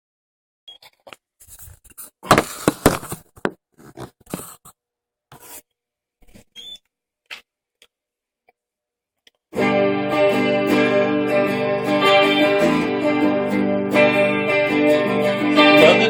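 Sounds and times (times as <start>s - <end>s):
phone handling scrapes and knocks: 1.5s - 4.7s.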